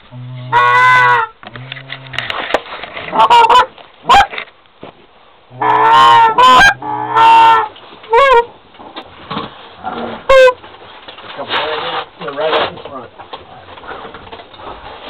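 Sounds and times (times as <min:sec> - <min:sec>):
goose honking: 0:00.1 - 0:02.0, 0:03.1 - 0:04.3, 0:05.5 - 0:08.5, 0:10.3 - 0:10.6.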